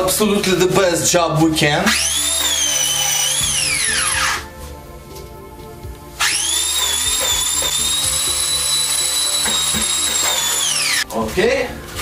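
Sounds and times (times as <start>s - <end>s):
power polisher motor whining: 6.2s - 11.1s.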